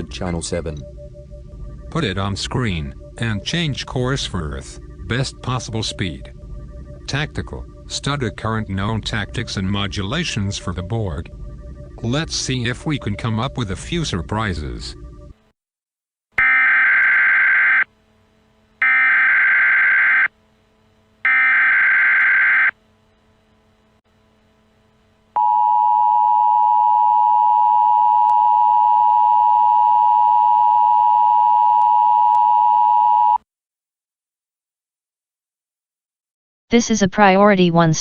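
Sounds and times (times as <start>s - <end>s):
warbling digital data tones: 0.0s - 15.3s.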